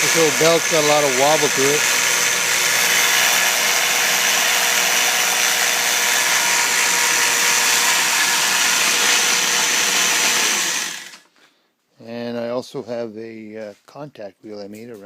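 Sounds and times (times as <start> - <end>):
belt grinder whirring: 0.0 - 11.3.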